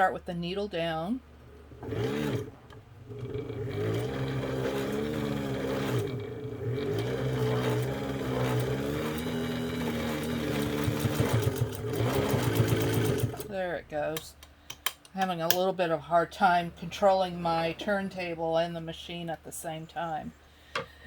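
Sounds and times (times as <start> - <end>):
sewing machine stitching leather: 1.4 - 13.6.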